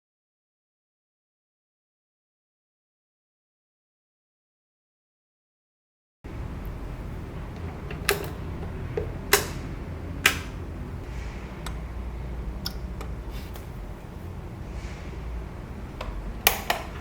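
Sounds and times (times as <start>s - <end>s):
vinyl rumble and hiss: 6.3s - 17.0s.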